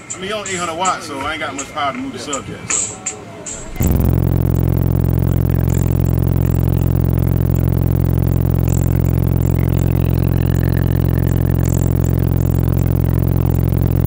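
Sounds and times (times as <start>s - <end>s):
subwoofer deep bass note: 3.6s - 14.0s.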